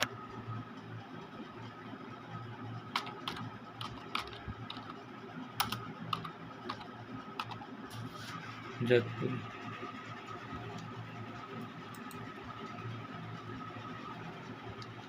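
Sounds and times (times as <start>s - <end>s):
faint steady hum: 0.0s - 15.0s
keyboard keystrokes: 3.0s - 5.0s, 5.6s - 7.6s.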